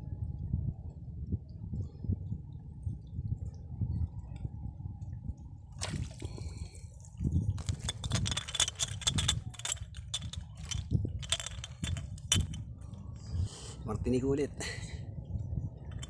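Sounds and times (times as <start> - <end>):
water splashing and sloshing: 5.7 - 12.9.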